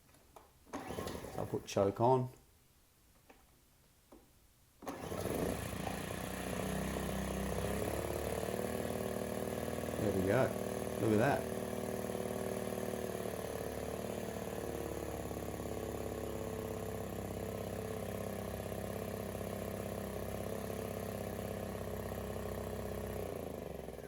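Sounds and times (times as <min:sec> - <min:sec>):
engine winding down whine: 0:04.9 - 0:12.9
generator engine running: 0:04.9 - 0:24.0.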